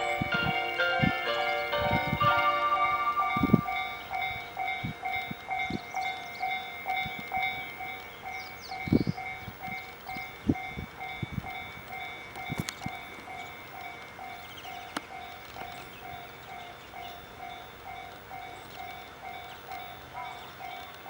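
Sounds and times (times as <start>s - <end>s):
level crossing bell ringing: 0.0s - 7.6s
diesel railcar pulling away: 0.0s - 21.0s.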